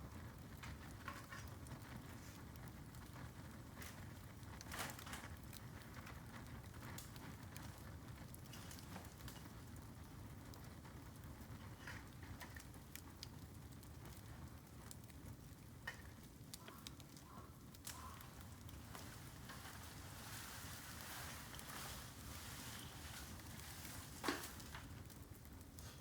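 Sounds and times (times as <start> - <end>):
campfire crackling: 0.0 - 26.0
low steady background noise: 0.0 - 26.0
small snaps and ticks: 0.5 - 19.9.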